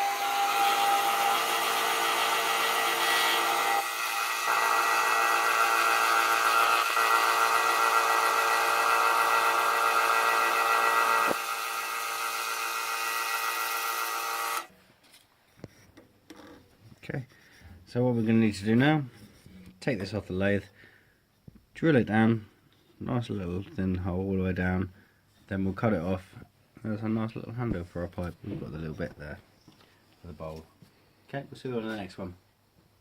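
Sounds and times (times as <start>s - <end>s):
wood lathe motor hum: 0.0s - 14.7s.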